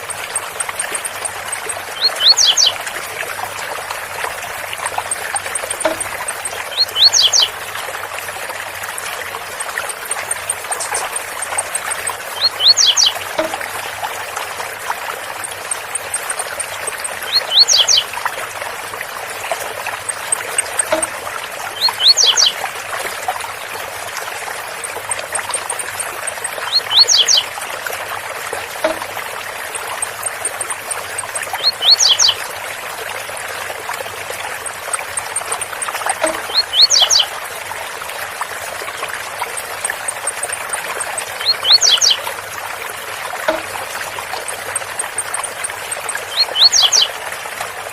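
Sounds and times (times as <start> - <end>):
bird singing short high phrase: 12.4 - 13.2.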